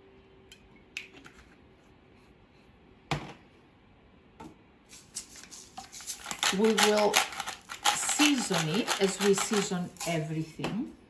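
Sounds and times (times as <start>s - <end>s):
kitchen items clicking and knocking: 5.9s - 10.8s.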